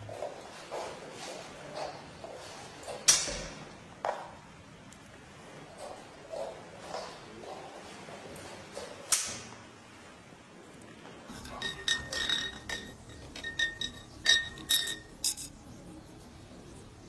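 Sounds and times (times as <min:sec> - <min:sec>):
light clinks on glass: 0:11.3 - 0:15.5.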